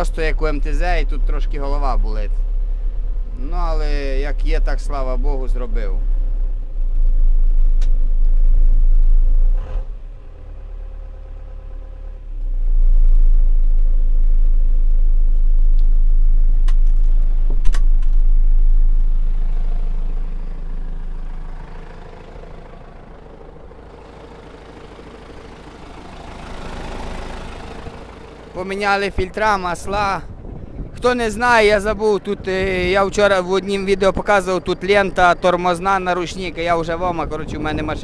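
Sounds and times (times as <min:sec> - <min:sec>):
tractor diesel engine rumbling: 0:00.0 - 0:38.0.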